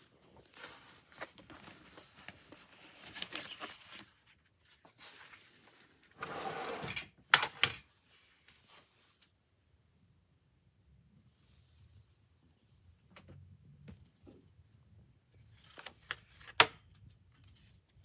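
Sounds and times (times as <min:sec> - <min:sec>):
rustle of handling: 0:00.0 - 0:06.2, 0:08.0 - 0:09.4.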